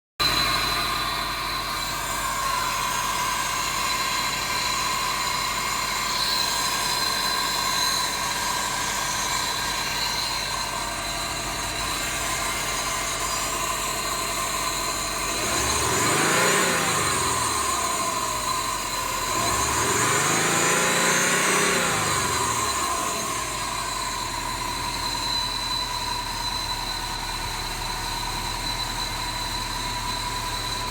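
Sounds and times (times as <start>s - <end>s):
car engine idling with whine: 0.2s - 30.9s
car engine revving: 14.3s - 25.1s.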